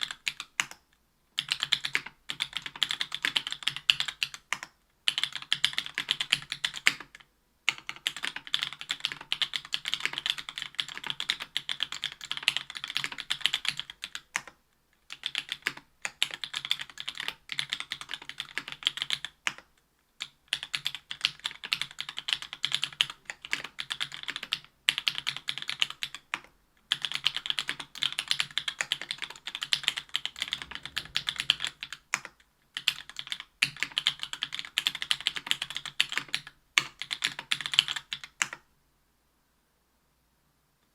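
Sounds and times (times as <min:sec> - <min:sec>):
mechanical keyboard typing: 0:00.0 - 0:00.8, 0:01.4 - 0:38.6.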